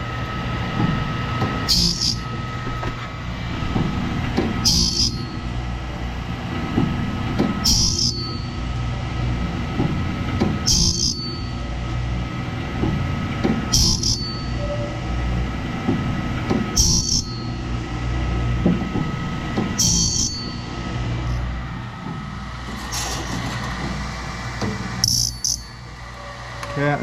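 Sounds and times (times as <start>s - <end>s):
motor humming: 0.0s - 27.0s
grinding wheel screeching: 1.7s - 2.4s, 13.7s - 15.2s, 16.8s - 17.6s, 19.8s - 20.7s, 22.6s - 24.2s, 25.0s - 27.0s.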